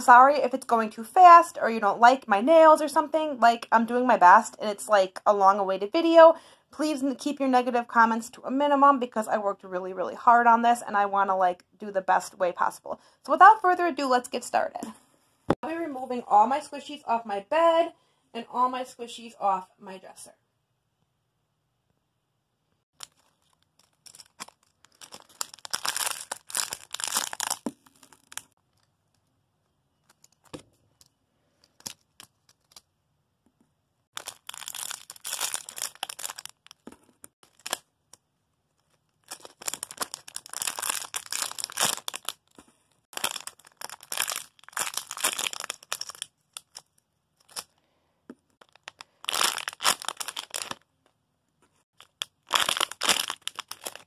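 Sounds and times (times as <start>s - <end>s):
squishy toys rustling and crackling: 22.9s - 29.2s, 34.1s - 47.7s, 48.4s - 51.0s, 51.9s - 54.0s.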